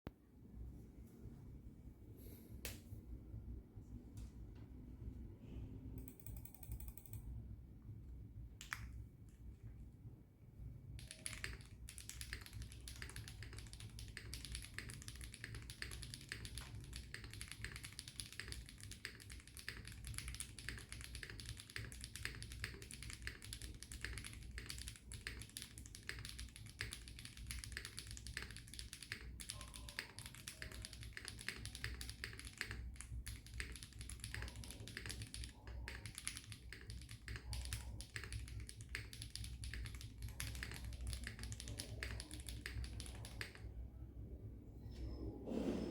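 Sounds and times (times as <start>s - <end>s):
mechanical keyboard typing: 6.0s - 7.3s, 11.0s - 43.7s.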